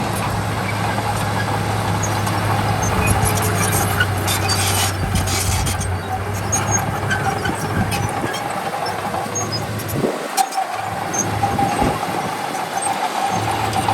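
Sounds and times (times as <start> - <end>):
diesel machinery engine hum: 0.0 - 13.9
metallic rattling: 1.1 - 10.0.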